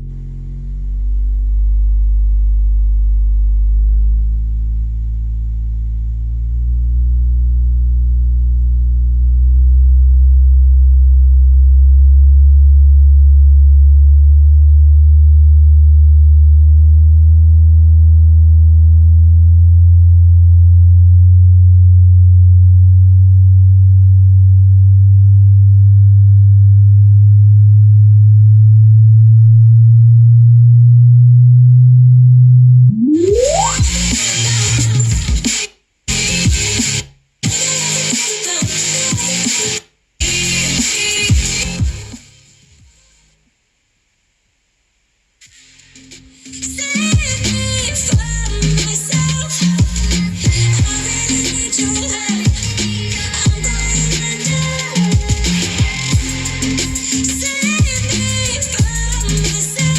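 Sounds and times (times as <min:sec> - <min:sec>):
bass sweep test tone rising: 0:00.0 - 0:34.4.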